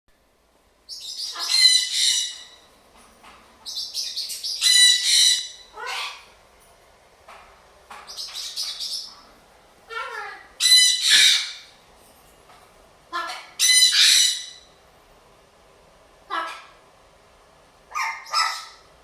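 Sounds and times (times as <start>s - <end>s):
parrots squawking and screeching: 0.9s - 2.7s, 3.6s - 6.4s, 9.9s - 11.8s, 13.1s - 14.7s, 16.3s - 16.8s, 17.9s - 18.9s.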